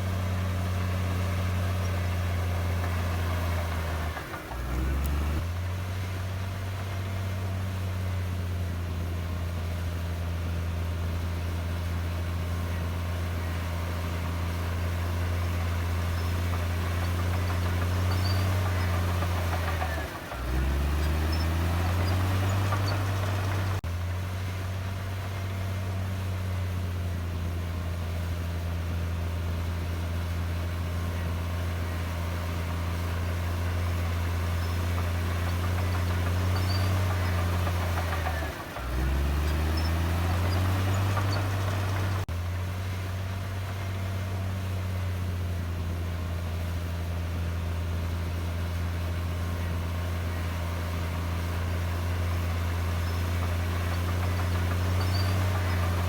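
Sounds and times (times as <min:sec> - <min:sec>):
bulldozer diesel engine running: 0:00.0 - 0:56.0.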